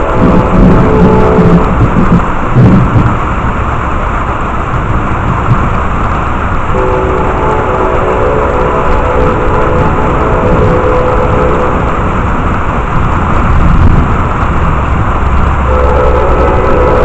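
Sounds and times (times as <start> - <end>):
train horn chord: 0.0 - 2.0, 6.7 - 12.3, 15.6 - 17.0
heavy rain falling: 0.0 - 17.0.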